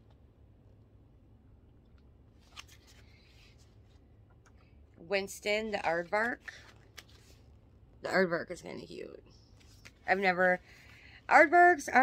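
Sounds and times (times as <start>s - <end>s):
low room hum: 0.0s - 12.0s
book page turning: 2.4s - 4.0s, 6.0s - 7.5s, 9.6s - 10.1s.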